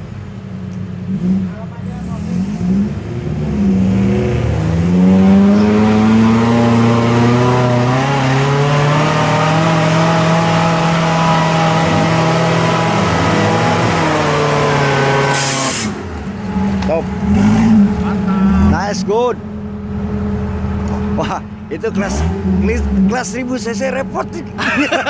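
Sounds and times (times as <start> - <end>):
car engine revving: 0.0 - 25.0.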